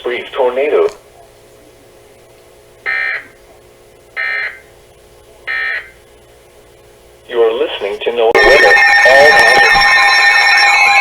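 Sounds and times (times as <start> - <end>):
buzzy electronic data bursts: 3.8 - 11.0.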